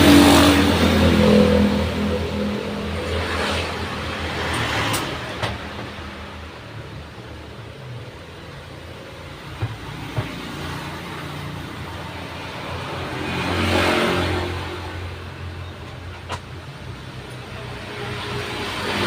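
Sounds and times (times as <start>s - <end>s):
vehicle passing by: 0.0s - 6.3s, 9.8s - 15.5s
background traffic: 0.0s - 19.0s.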